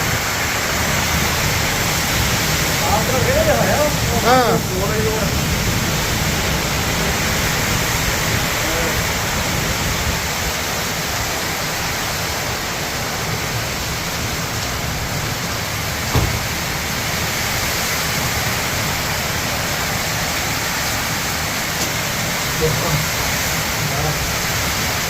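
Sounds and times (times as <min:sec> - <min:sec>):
heavy rain pouring: 0:00.0 - 0:25.0
short thump: 0:16.1 - 0:16.6.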